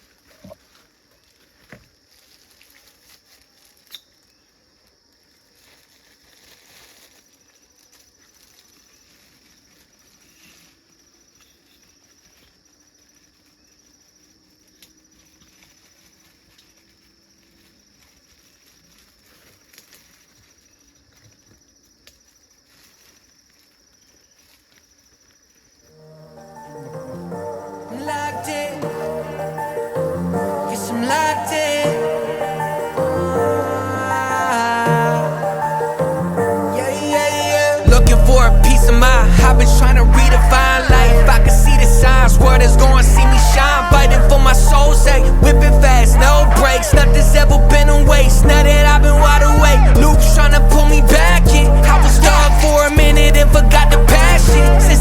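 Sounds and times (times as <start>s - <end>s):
small clicks and rustles: 0.0s - 25.8s
insects trilling: 0.0s - 55.0s.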